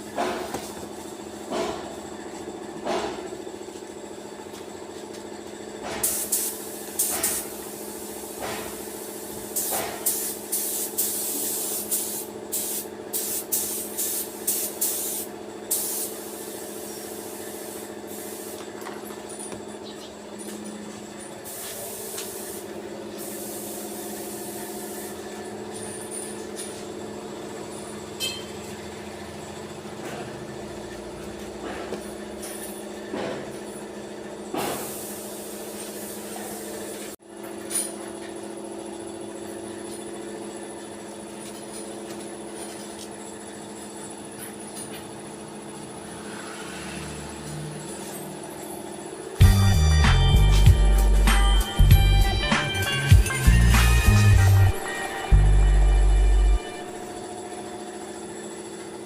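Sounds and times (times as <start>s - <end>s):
spraying hiss bursts: 6.0s - 18.6s, 21.5s - 25.2s
steady low hum: 49.4s - 58.0s.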